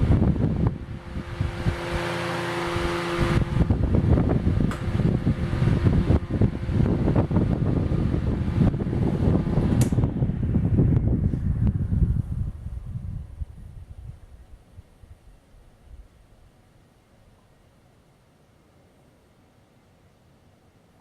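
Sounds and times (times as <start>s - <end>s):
airflow rumbling on microphone: 0.0s - 16.6s
fan motor humming: 0.0s - 20.5s.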